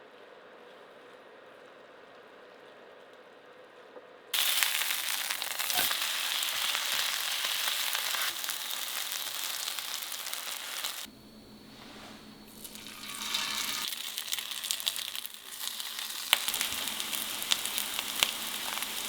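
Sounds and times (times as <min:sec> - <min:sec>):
food sizzling in a frying pan: 0:04.4 - 0:19.0.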